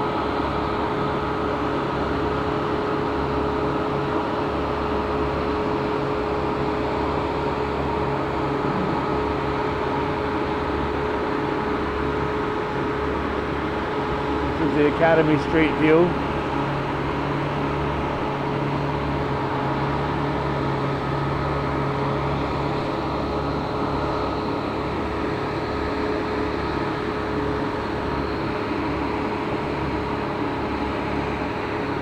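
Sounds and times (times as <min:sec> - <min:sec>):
machinery droning: 0:07.2 - 0:10.7, 0:14.0 - 0:24.3.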